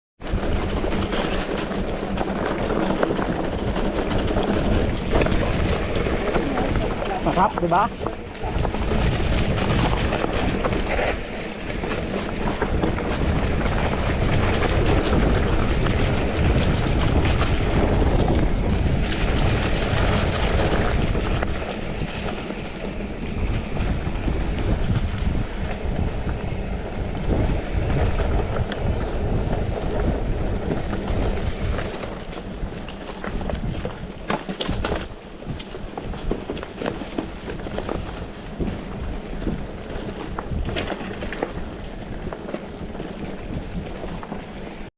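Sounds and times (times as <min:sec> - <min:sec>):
bicycle riding rumble: 0:00.2 - 0:44.9
wind buffeting microphone: 0:00.2 - 0:44.9.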